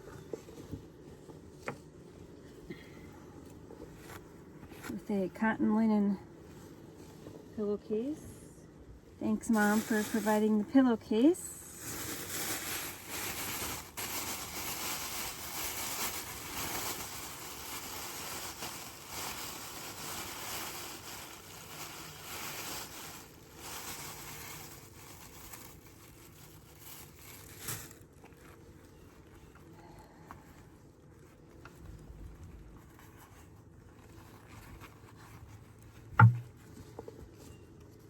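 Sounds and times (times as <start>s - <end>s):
cloth rustling and crinkling: 0.0s - 8.1s, 9.2s - 38.0s
single knock: 36.2s - 36.5s.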